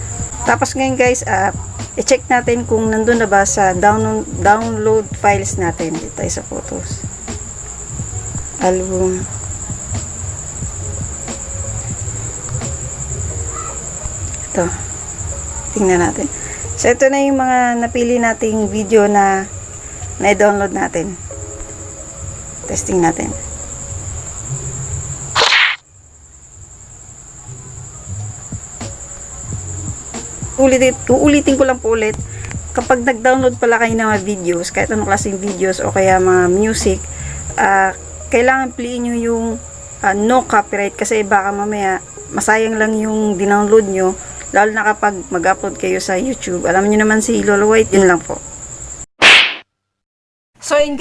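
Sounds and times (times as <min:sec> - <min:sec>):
crickets trilling: 0:00.0 - 0:49.1
short loud hiss: 0:25.4 - 0:25.8, 0:49.2 - 0:49.6.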